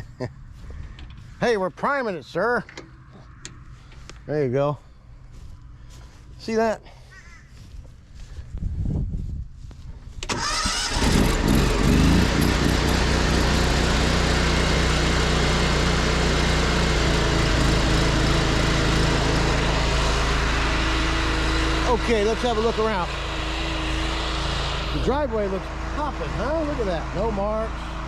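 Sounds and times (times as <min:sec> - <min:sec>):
pressure washer engine: 0:10.3 - 0:28.0.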